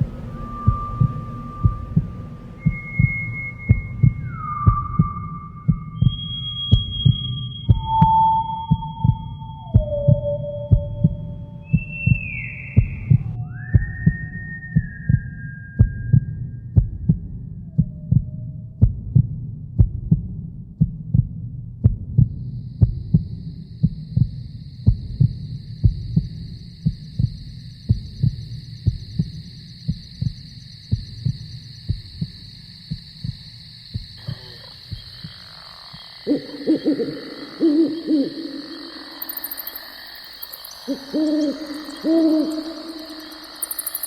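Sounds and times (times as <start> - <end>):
thin high tone: 0.0 - 6.6
heartbeat thumps: 0.0 - 39.8.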